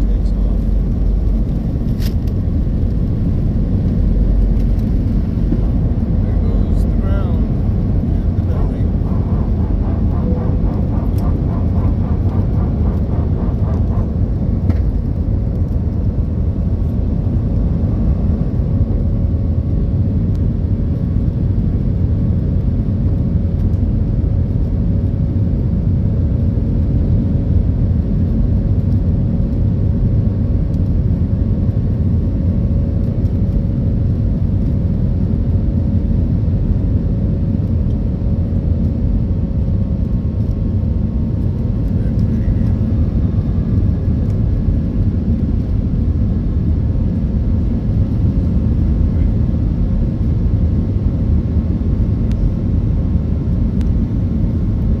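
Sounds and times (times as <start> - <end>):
faint steady hum: 0.0 - 19.1
vehicle rumble: 0.0 - 23.9, 35.9 - 55.0.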